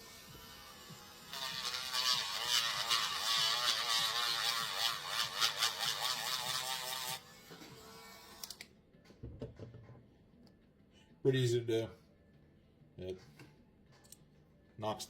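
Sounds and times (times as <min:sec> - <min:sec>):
rotary tool grinding metal: 0:00.0 - 0:08.4.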